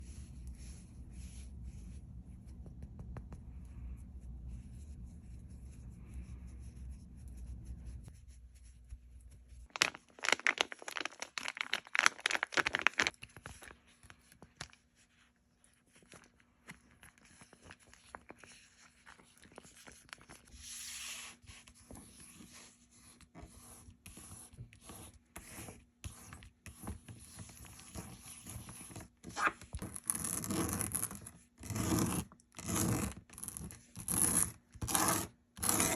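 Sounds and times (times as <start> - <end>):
low steady hum: 0.0 - 9.7
fidget toys scratching and crinkling: 7.4 - 35.9.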